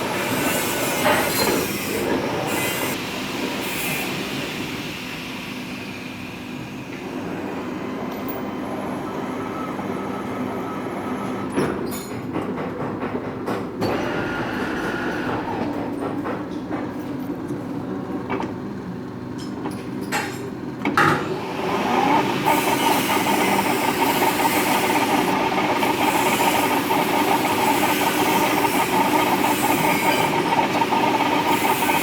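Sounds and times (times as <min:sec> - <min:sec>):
lathe humming: 0:21.4 - 0:32.0.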